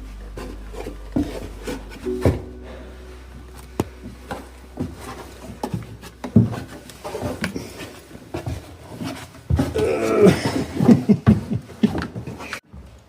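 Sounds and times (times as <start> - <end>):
footsteps on wooden stairs: 4.8 - 9.9.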